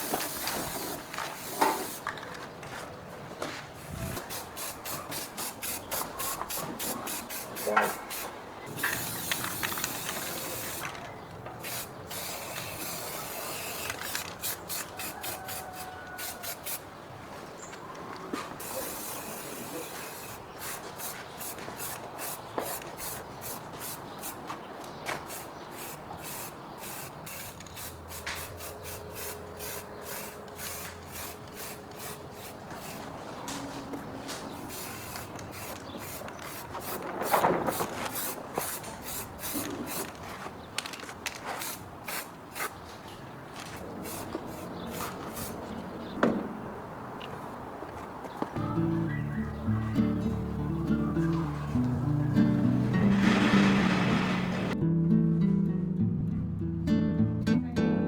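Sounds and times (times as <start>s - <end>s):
paint spray gun hissing: 0.1s - 2.0s, 4.2s - 10.8s, 11.6s - 16.8s, 18.6s - 24.4s, 25.3s - 33.0s, 34.5s - 37.0s.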